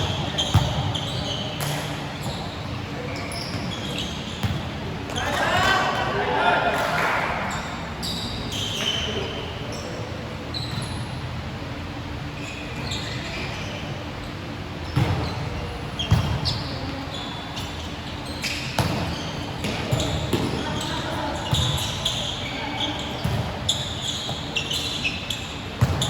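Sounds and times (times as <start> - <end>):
sneakers squeaking on court: 0.0 - 6.0, 7.5 - 11.4, 12.3 - 26.0
basketball bouncing: 25.8 - 26.0.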